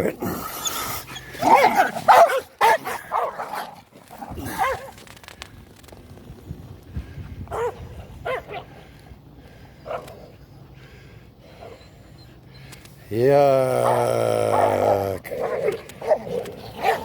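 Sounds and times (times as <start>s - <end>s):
dog barking: 1.4s - 3.7s, 7.5s - 8.7s, 15.4s - 17.0s.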